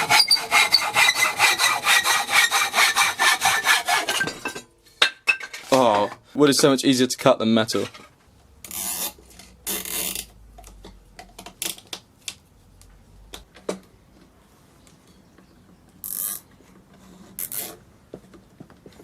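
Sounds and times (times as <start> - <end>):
cable ties ratcheting zip: 8.6 - 10.8, 16.0 - 16.5, 17.4 - 17.8
small clicks and knocks: 9.3 - 14.3.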